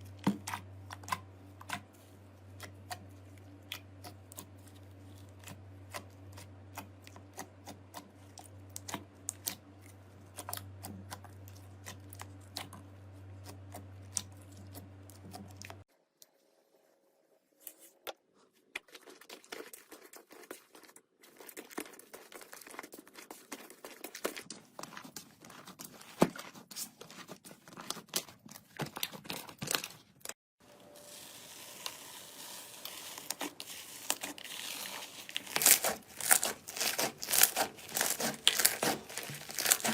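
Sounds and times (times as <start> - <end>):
dense crinkling: 18.7 - 39.9.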